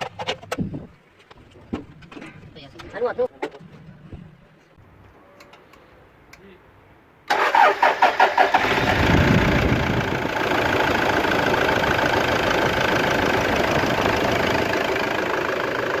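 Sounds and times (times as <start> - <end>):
diesel engine starting and idling: 7.3 - 16.0.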